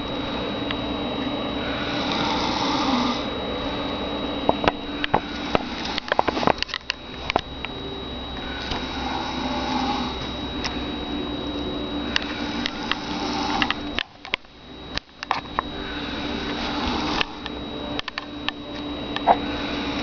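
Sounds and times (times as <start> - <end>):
man snoring: 1.5 - 3.9, 4.8 - 6.6, 8.4 - 10.5, 12.0 - 14.2, 15.7 - 17.5, 19.2 - 20.0.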